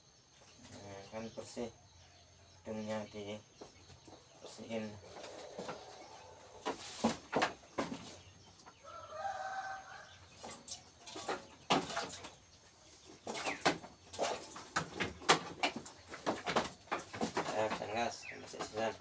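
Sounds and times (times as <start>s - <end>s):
sharp knocks and scuffles: 6.6s - 8.4s.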